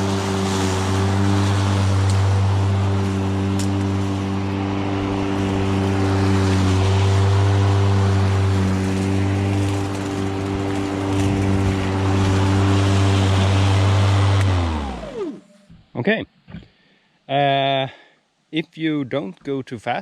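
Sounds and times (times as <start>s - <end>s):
electric lawnmower motor hum: 0.0s - 15.6s
grass being cut: 0.0s - 15.6s.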